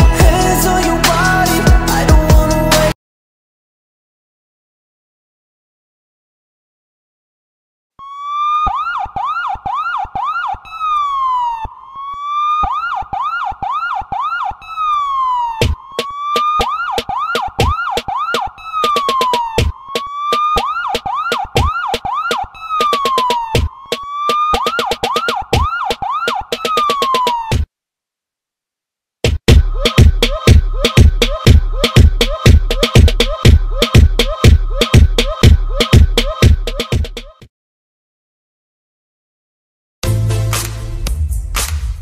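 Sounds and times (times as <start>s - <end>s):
electronic siren wail and yelps: 8.0s - 27.7s
drum hits: 29.2s - 37.4s.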